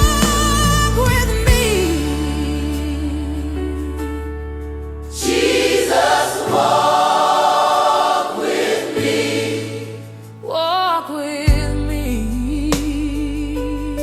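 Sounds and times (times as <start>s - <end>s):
choir singing wordless harmonies: 5.1s - 11.1s.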